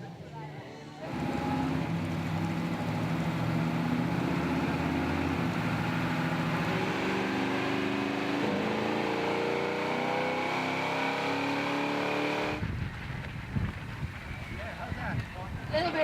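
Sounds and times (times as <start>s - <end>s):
car engine revving: 1.0s - 12.7s.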